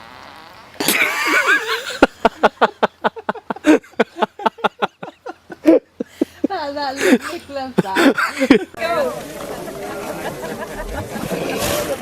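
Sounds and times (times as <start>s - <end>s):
person laughing hard: 0.8s - 6.1s, 7.0s - 8.7s, 9.7s - 11.9s.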